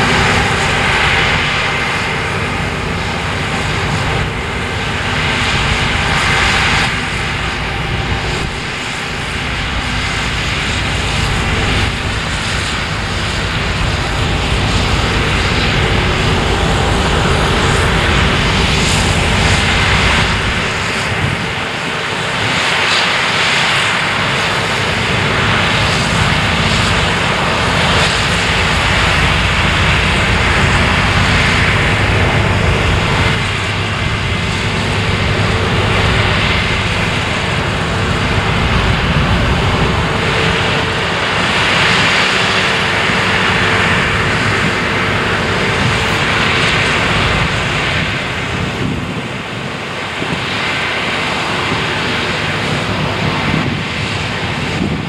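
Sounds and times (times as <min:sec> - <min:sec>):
combine harvester engine and threshing: 0:00.0 - 0:55.0.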